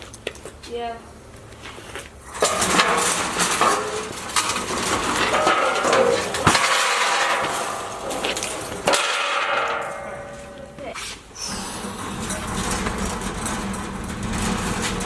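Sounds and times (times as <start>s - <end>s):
steel table scraping on steel: 1.8s - 15.0s
sharp metallic knocks: 2.4s - 11.0s.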